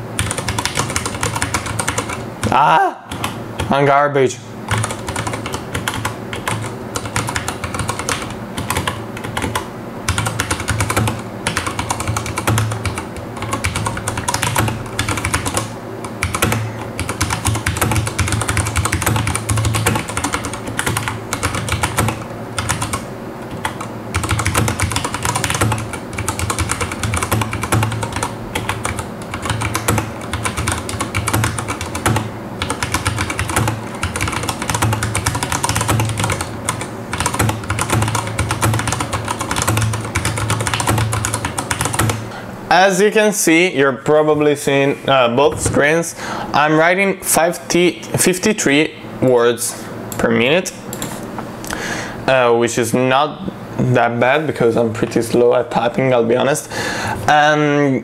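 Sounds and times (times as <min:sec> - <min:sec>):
fast typing on mechanical keyboard: 0:00.2 - 0:02.2, 0:03.1 - 0:03.8, 0:04.7 - 0:42.2.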